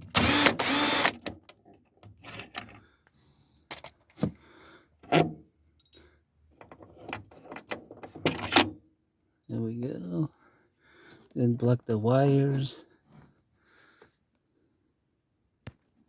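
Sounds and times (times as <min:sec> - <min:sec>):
cordless drill running: 0:00.0 - 0:01.2.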